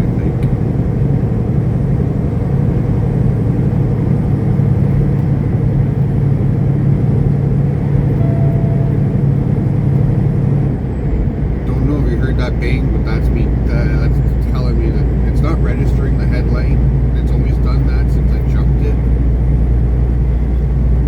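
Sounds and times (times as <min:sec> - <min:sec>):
diesel truck engine droning: 0:00.0 - 0:21.0
road noise: 0:00.0 - 0:21.0.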